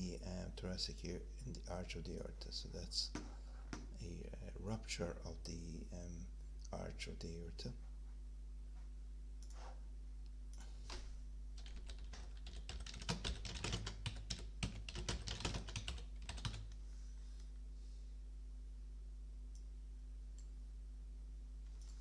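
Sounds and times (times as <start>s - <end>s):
steady low hum: 0.0s - 22.0s
computer keyboard typing: 11.6s - 16.8s.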